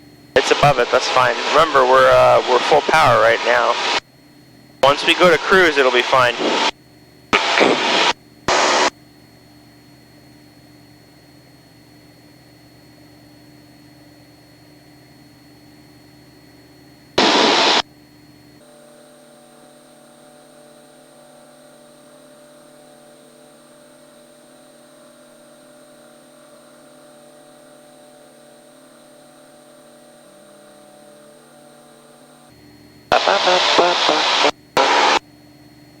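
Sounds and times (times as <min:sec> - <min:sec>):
airplane engine hum through headset: 0:00.3 - 0:11.7, 0:33.1 - 0:35.2
loud noise bursts: 0:00.4 - 0:04.0, 0:04.8 - 0:06.7, 0:07.4 - 0:08.9, 0:17.2 - 0:17.8, 0:33.1 - 0:35.2.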